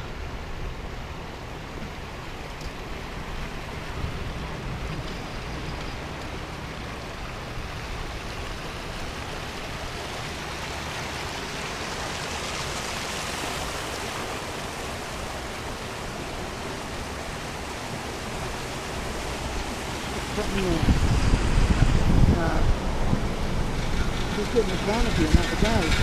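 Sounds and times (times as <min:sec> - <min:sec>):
wind rushing on microphone: 0:00.1 - 0:26.0.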